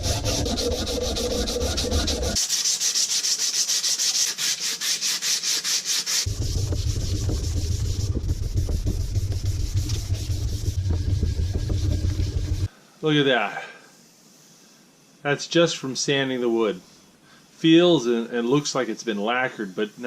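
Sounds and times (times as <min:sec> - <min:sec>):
sandpaper rubbing on wood: 0:00.0 - 0:12.7
low hum: 0:06.3 - 0:12.7.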